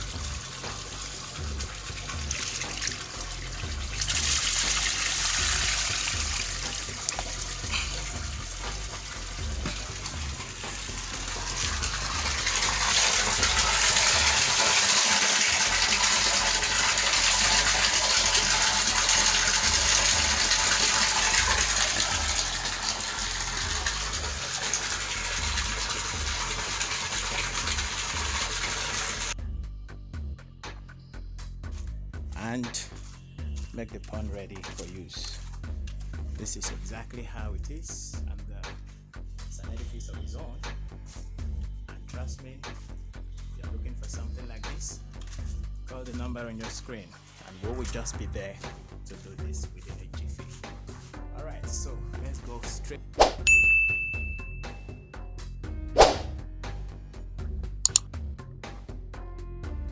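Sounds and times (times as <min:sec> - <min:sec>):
water gushing into pond: 0:00.0 - 0:29.4, 0:56.0 - 0:56.3.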